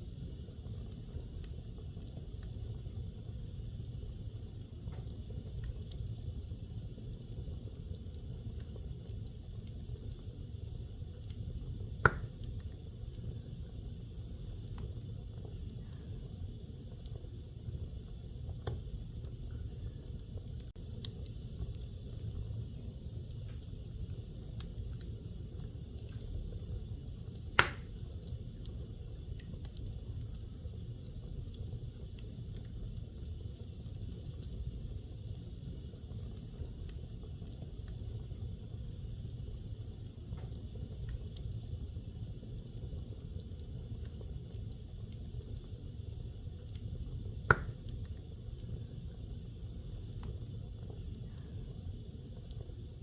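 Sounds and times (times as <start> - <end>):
wood fire crackling: 0.0 - 53.0
fire popping loudly: 6.9 - 13.5, 20.8 - 53.0.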